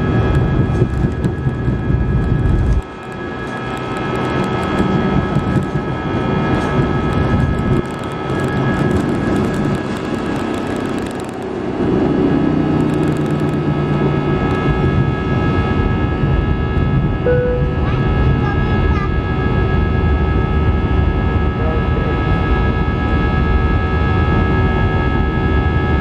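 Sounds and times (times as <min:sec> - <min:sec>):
jet engines whining: 0:00.0 - 0:26.0
low steady hum: 0:17.2 - 0:18.6.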